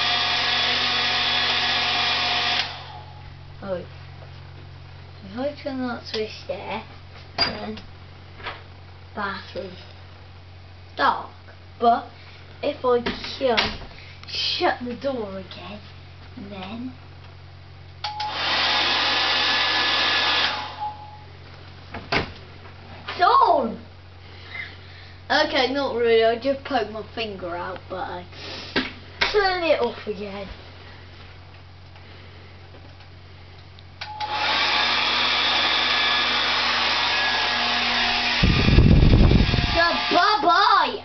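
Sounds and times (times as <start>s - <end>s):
hairdryer blowing with whine: 0.0s - 3.1s, 18.0s - 21.1s, 34.0s - 40.8s
wind rumble on microphone: 38.4s - 39.8s.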